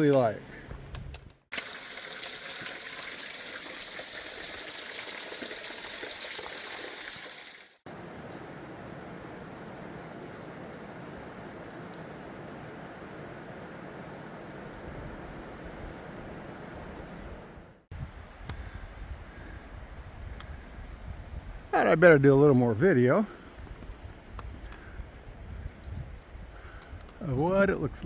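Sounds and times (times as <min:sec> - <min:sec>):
creek water flowing: 0:01.5 - 0:07.8.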